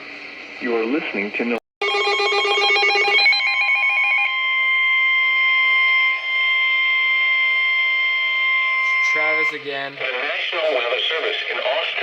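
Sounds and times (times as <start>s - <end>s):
steady warning alarm tone: 1.8s - 11.1s
warbling data tones: 1.8s - 11.2s.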